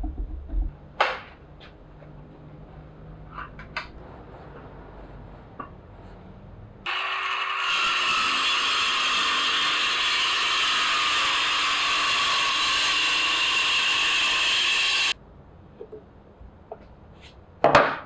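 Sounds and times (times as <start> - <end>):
woodworking tool hissing: 6.9 - 15.2.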